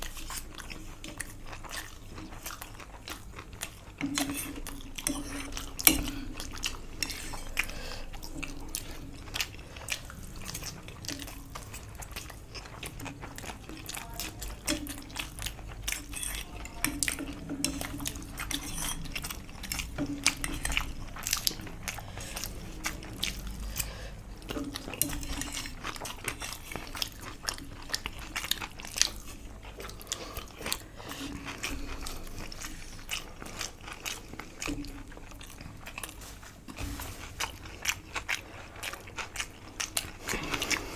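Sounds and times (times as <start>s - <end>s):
people chewing and crunching food: 0.0s - 40.9s.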